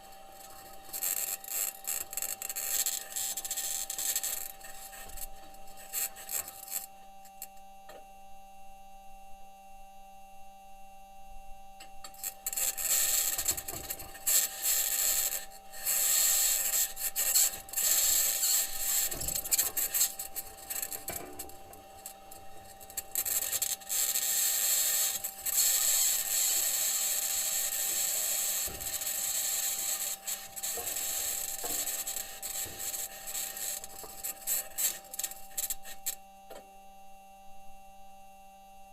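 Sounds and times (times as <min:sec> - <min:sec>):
steady high whine: 0:00.0 - 0:38.9
metal wheels scraping over rock: 0:12.5 - 0:36.1.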